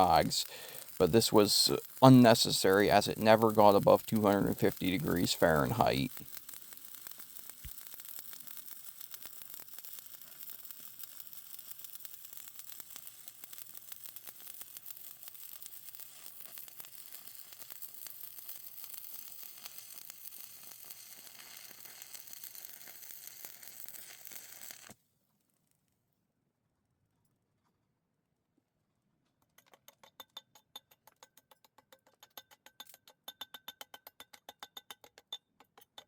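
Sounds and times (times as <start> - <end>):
welding arc crackling: 0.0 - 25.0.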